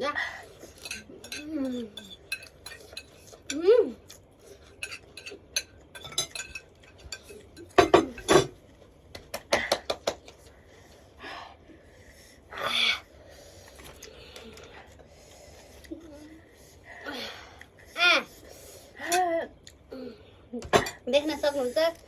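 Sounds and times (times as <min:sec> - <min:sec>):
spoons clinking against dishes: 0:00.6 - 0:03.7, 0:04.6 - 0:08.5.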